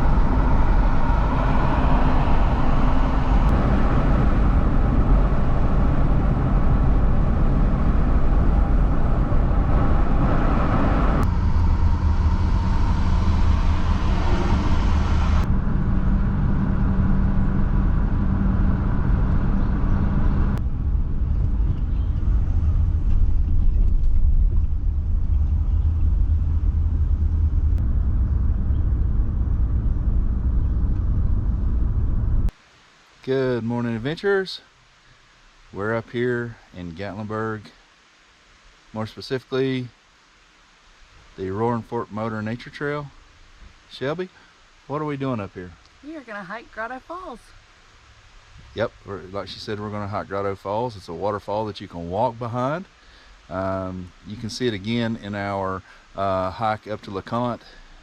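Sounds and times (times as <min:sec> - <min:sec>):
car engine hum: 0:00.0 - 0:32.6
road rumble: 0:00.0 - 0:39.2.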